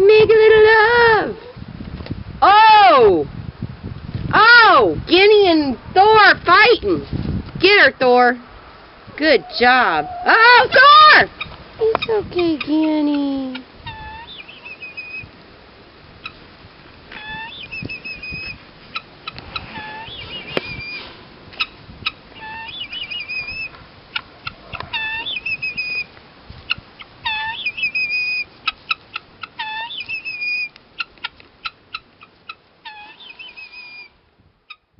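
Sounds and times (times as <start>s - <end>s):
guinea fowl calling: 9.4s - 12.2s, 13.5s - 15.3s, 17.2s - 26.1s, 26.7s - 34.9s.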